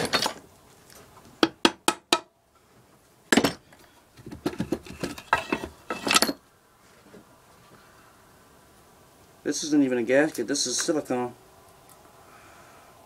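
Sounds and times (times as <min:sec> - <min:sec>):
metal parts clinking and clattering: 0:05.0 - 0:06.4.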